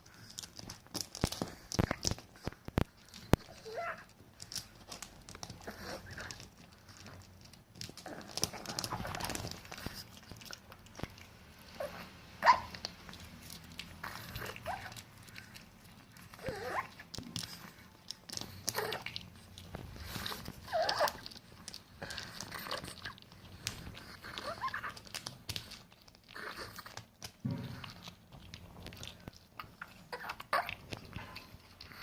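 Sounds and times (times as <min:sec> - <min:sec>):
dog crunching food: 0:00.0 - 0:32.0
dog high-pitched cries: 0:03.4 - 0:04.1, 0:11.8 - 0:12.8, 0:16.4 - 0:17.1, 0:18.5 - 0:19.2, 0:20.1 - 0:21.4, 0:24.2 - 0:25.2, 0:29.6 - 0:32.0.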